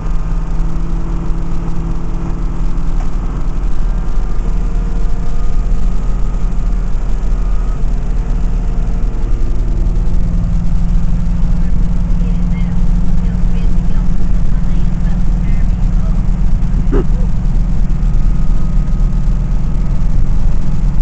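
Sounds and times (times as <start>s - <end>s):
diesel bus engine pulling under load: 0.0s - 21.0s.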